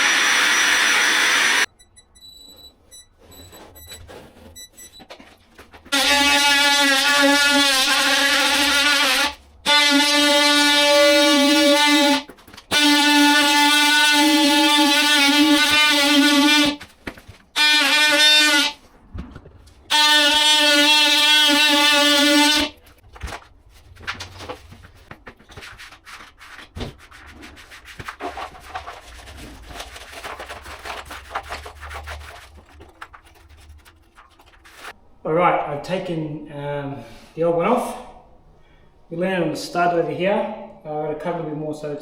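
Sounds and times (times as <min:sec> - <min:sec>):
power tool buzzing: 0:00.0 - 0:01.7
scraping: 0:22.7 - 0:35.0.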